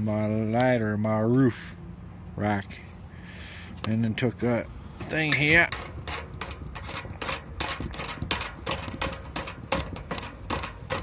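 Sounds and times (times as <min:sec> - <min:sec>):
metal hardware clicking and rattling: 0:05.0 - 0:11.0.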